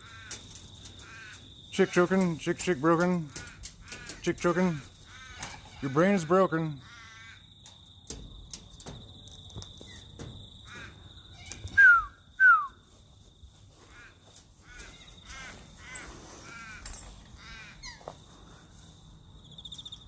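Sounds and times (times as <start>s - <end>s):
parrots screeching and calling: 3.3s - 7.4s, 13.9s - 18.2s.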